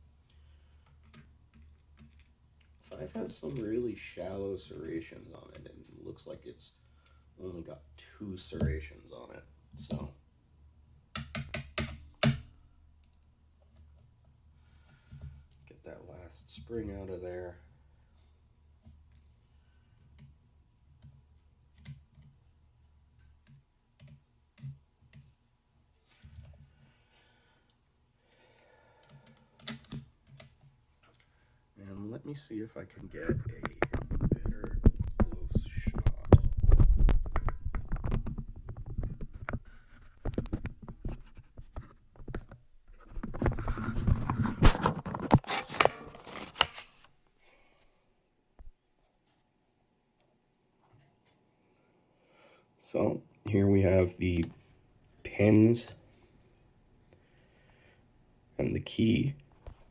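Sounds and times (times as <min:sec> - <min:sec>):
rustling and scraping: 0:33.0 - 0:49.5.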